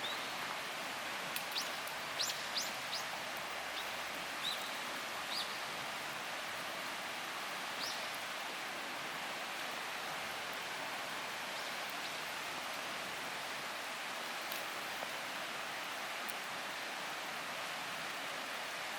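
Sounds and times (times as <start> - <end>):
steady rushing hiss: 0.0 - 18.9
small birds chirping: 1.5 - 5.7, 7.8 - 8.2.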